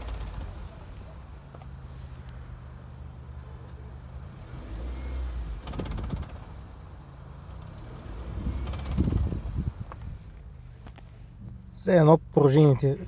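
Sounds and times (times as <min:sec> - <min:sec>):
clutch rattling: 0:00.0 - 0:02.4, 0:05.5 - 0:13.0
car engine running: 0:00.0 - 0:13.0.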